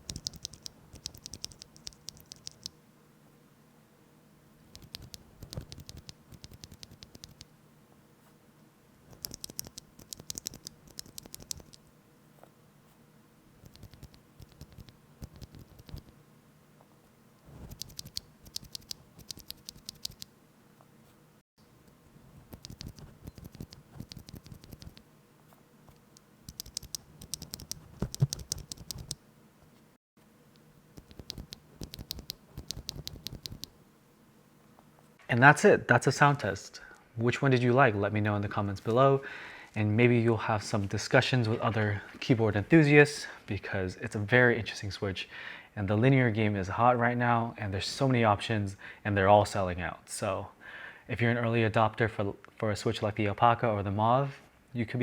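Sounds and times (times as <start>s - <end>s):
typing on mechanical keyboard: 0.0s - 2.7s, 4.7s - 7.4s, 9.1s - 11.8s, 13.6s - 16.1s, 17.6s - 20.3s, 22.5s - 25.0s, 25.9s - 29.2s, 31.0s - 33.7s.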